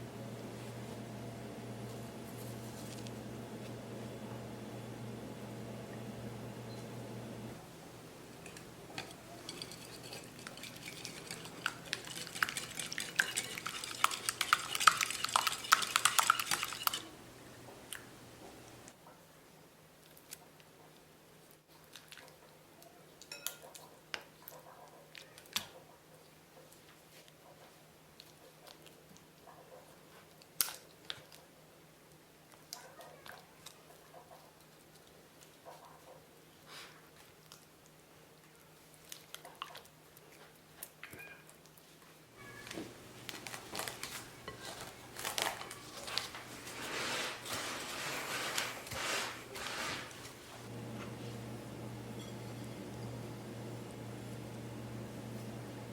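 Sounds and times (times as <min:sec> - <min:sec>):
rustling scrapes: 0:02.3 - 0:03.2, 0:08.4 - 0:17.2, 0:42.4 - 0:51.5
utensils clinking against bowl: 0:08.3 - 0:17.2, 0:42.6 - 0:46.8, 0:52.2 - 0:52.9
faint steady hum: 0:50.2 - 0:55.9.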